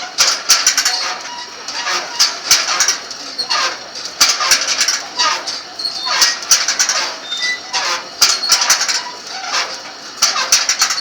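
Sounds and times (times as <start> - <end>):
metal parts squeaking and scraping: 5.2 - 9.7, 10.3 - 11.0.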